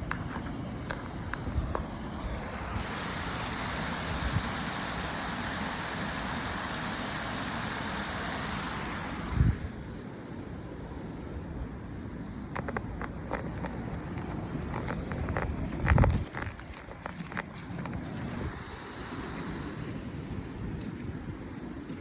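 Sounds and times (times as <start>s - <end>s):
wind buffeting microphone: 0.0s - 3.2s, 12.4s - 21.9s
steady rushing hiss: 0.0s - 10.5s, 11.7s - 21.8s.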